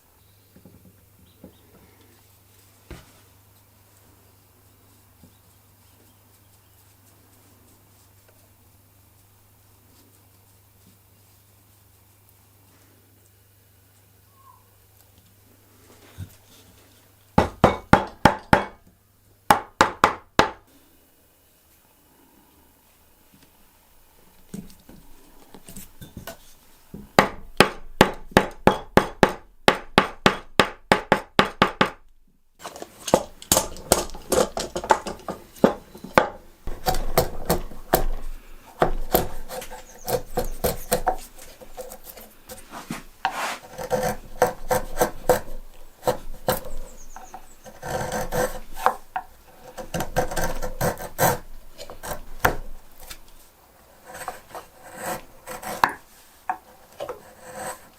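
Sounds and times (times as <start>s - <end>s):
hand tool scraping wood: 32.6s - 57.9s.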